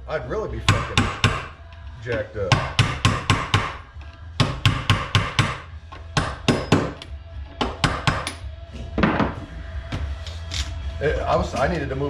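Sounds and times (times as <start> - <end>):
hammer striking metal: 0.7 - 3.8, 4.4 - 9.4.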